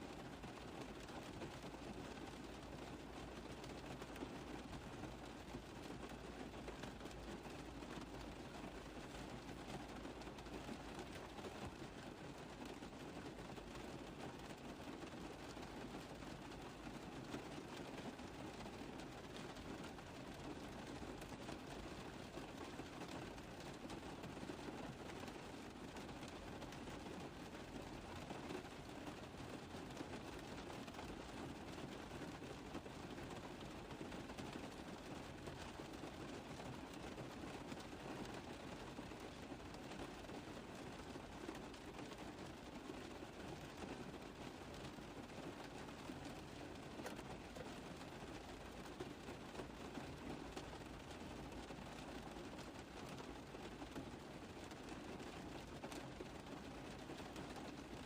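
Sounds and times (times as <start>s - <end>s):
rain pattering on a car roof: 0.0s - 58.0s.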